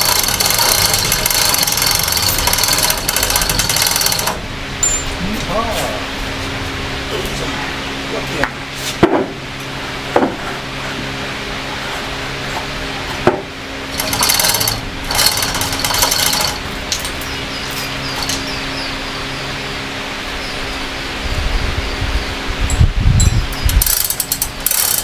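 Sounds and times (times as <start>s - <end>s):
rapid ratchet clicks: 0.0s - 4.4s, 13.9s - 17.4s, 23.7s - 25.0s
steady low hum: 0.0s - 25.0s.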